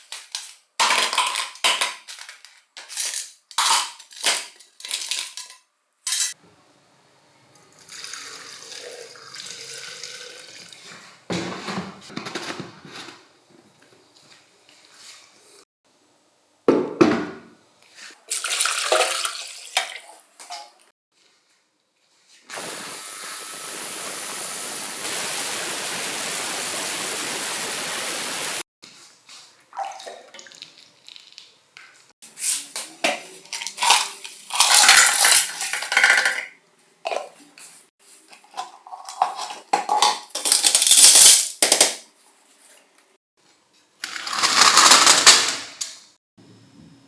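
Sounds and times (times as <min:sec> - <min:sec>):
water spraying hiss: 0:22.6 - 0:28.6.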